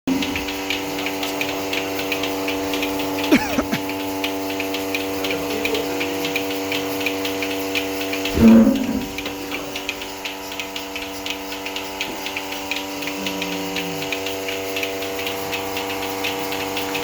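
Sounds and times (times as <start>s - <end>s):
pulsator ticking: 0.1s - 17.0s
vacuum pump hum: 0.1s - 17.0s.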